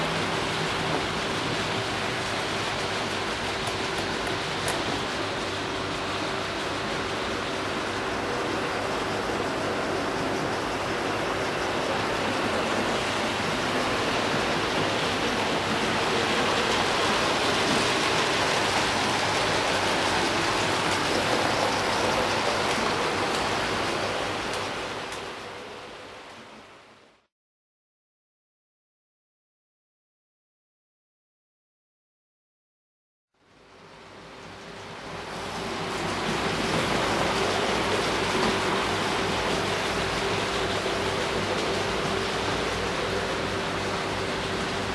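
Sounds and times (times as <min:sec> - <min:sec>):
wheels rattling on rail: 0:00.0 - 0:26.8, 0:34.4 - 0:44.9.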